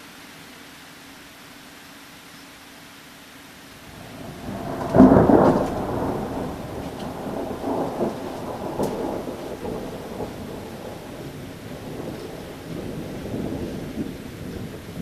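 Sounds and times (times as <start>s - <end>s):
thunder clap and rumble: 3.9s - 15.0s.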